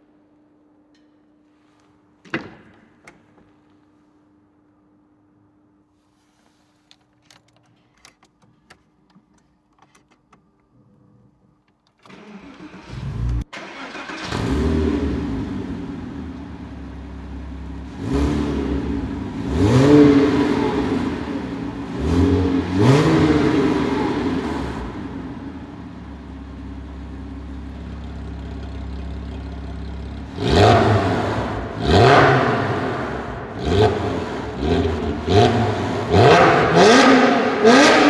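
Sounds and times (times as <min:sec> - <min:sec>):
car engine starting and idling: 0:12.0 - 0:38.0
car engine revving: 0:12.6 - 0:38.0.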